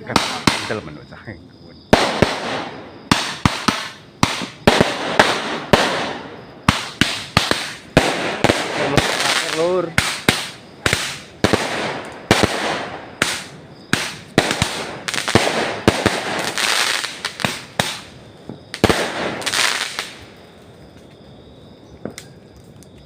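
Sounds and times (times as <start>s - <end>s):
fireworks banging and crackling: 0.0s - 1.0s, 1.9s - 20.4s.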